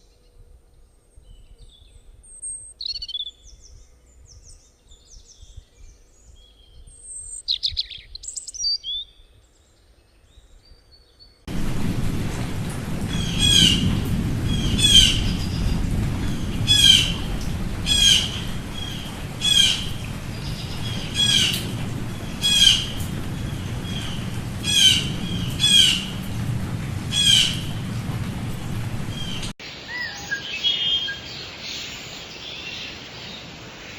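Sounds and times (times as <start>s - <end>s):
low rumble: 11.5s - 29.6s
bird giving harsh call: 13.2s - 26.4s, 27.0s - 28.0s.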